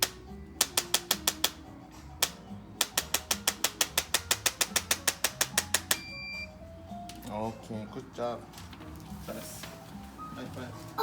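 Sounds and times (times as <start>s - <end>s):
adjusting instrument clicking: 0.0s - 1.6s, 2.2s - 6.0s.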